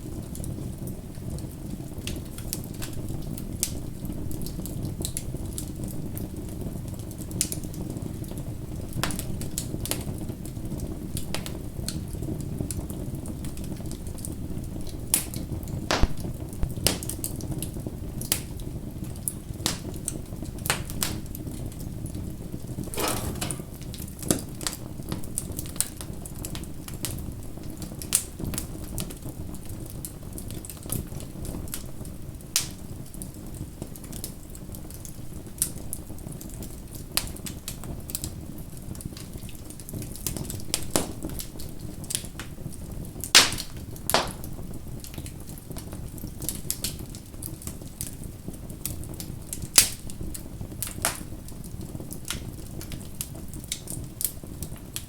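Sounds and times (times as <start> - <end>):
low rumble of burning: 0.0 - 55.0
wood fire crackling: 0.0 - 55.0.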